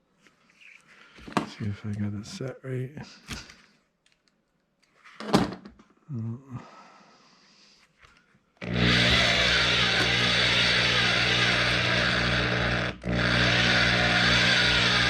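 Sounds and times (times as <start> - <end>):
drill running at speed: 8.6 - 15.0.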